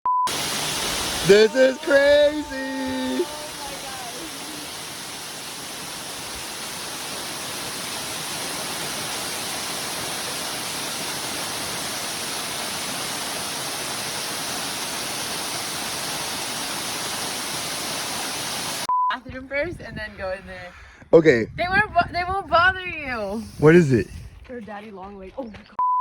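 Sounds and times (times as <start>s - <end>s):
waterfall roaring: 0.3s - 18.9s.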